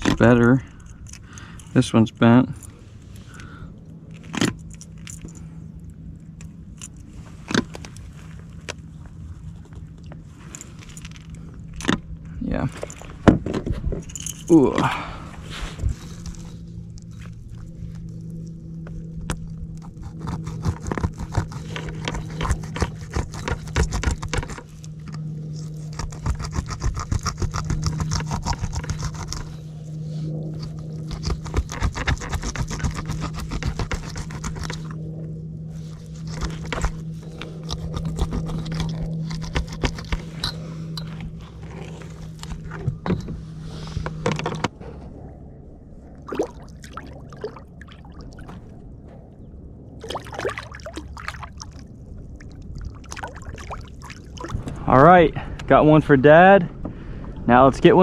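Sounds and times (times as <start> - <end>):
gear scraping and knocking: 15.7 - 44.8.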